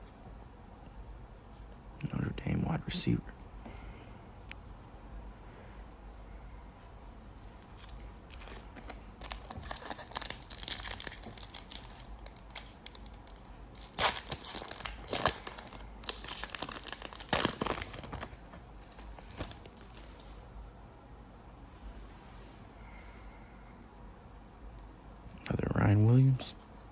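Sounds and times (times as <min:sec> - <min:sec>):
card pack wrapper tearing and crinkling: 0:07.7 - 0:20.3.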